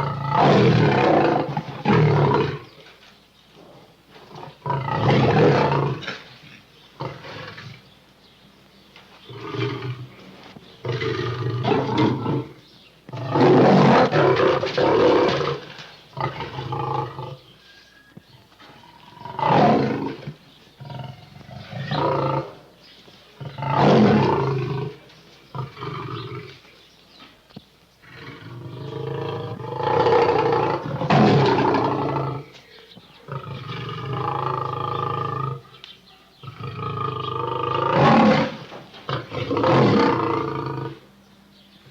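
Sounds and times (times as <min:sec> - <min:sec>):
big animal roars and snarls: 0:00.0 - 0:02.8, 0:04.2 - 0:07.8, 0:10.8 - 0:17.5, 0:18.7 - 0:22.6, 0:23.4 - 0:26.6, 0:28.0 - 0:32.5, 0:33.3 - 0:35.7, 0:36.4 - 0:41.0.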